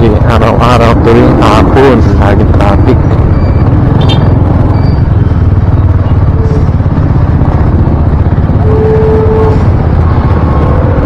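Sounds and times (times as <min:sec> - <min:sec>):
motorcycle engine: 0:00.0 - 0:11.0
traffic: 0:00.0 - 0:11.0
wind rumbling on microphone: 0:00.0 - 0:11.0
brief steady tone: 0:08.6 - 0:09.6.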